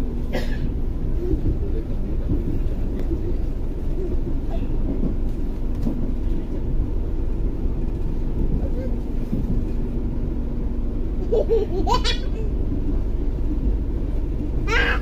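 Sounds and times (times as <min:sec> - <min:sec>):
train rumbling in motion: 0:00.0 - 0:15.0.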